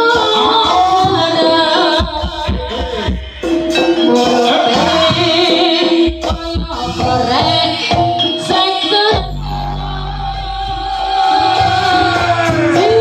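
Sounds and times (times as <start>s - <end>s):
hand drums: 0.0s - 13.0s
gamelan ensemble playing: 0.1s - 13.0s
person singing: 3.8s - 13.0s.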